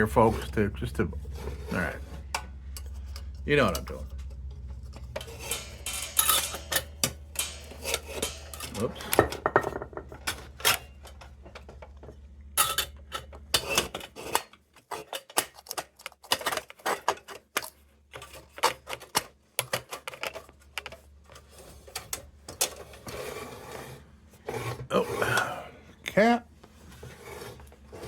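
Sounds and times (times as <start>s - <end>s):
small metal parts clicking and clattering: 1.2s - 23.0s.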